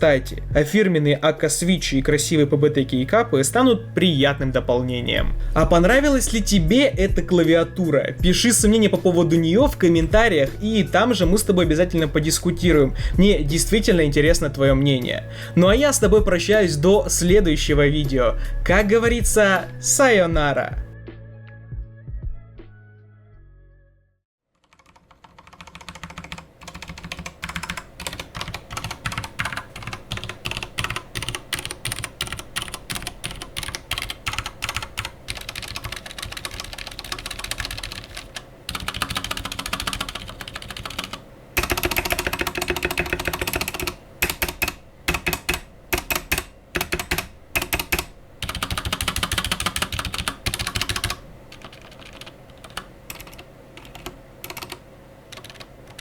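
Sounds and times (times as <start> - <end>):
mechanical keyboard typing: 24.6 - 56.0.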